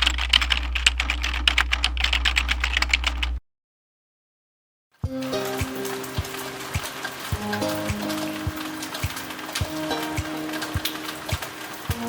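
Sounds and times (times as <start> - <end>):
rapid irregular clicking: 0.0 - 3.4, 5.2 - 12.0
music: 5.0 - 12.0
rain: 5.1 - 12.0.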